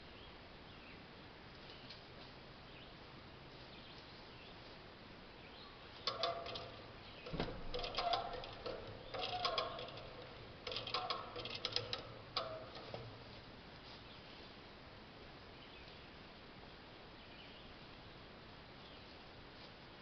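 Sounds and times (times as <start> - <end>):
ratchet metallic clicking: 6.0 - 13.1
dull thump: 7.3 - 7.8.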